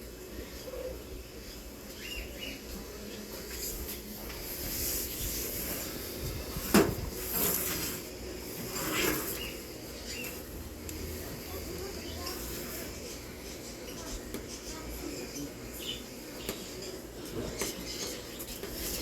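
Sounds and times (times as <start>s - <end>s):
rustling and handling noise: 3.4s - 13.3s, 16.4s - 19.0s.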